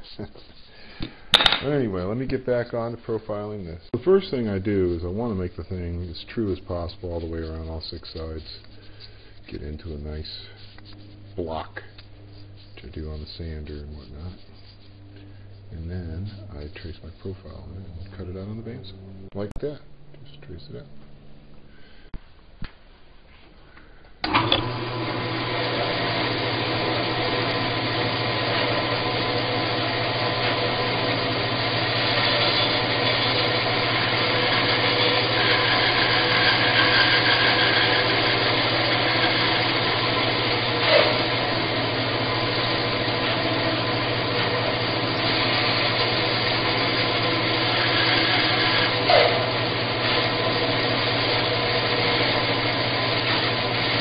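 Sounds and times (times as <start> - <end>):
bandsaw running: 24.2 - 54.0.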